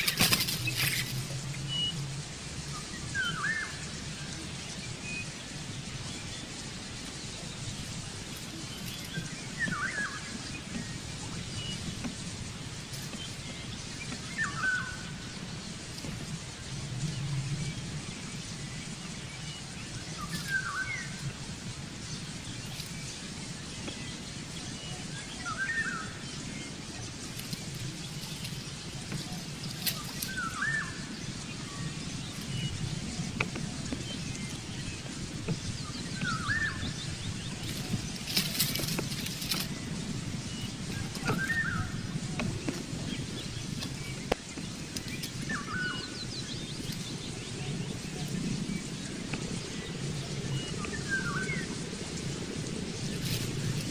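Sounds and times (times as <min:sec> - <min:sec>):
outdoor background noise: 0:00.0 - 0:53.9
bird call: 0:12.9 - 0:16.2, 0:24.8 - 0:48.6.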